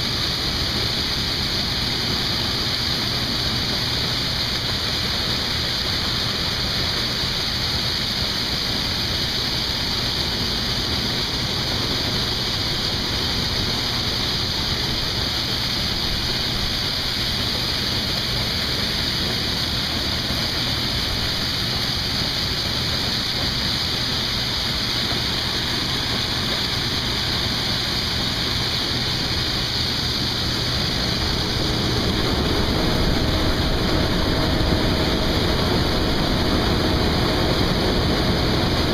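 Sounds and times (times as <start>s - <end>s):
combine harvester rushing hiss: 0.0s - 38.9s
low hum: 22.0s - 38.9s.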